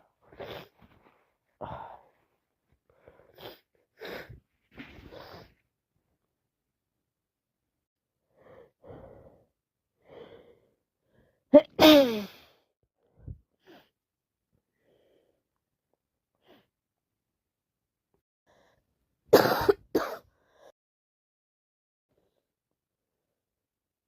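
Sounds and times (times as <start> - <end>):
woman sneezing: 11.6 - 12.4.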